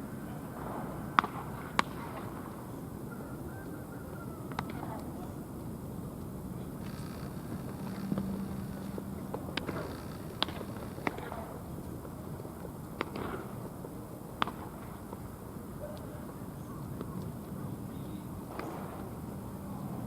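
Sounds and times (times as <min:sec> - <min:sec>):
crowd murmur: 0:00.0 - 0:20.0.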